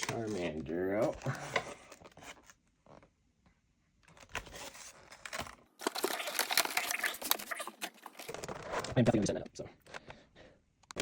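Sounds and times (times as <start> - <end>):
plastic packaging crinkling: 4.5 - 8.9.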